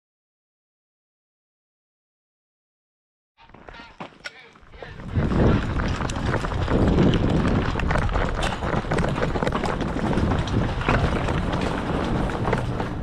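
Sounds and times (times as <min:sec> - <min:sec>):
quick running footsteps: 0:03.4 - 0:13.0
steady low rumble: 0:04.7 - 0:13.0.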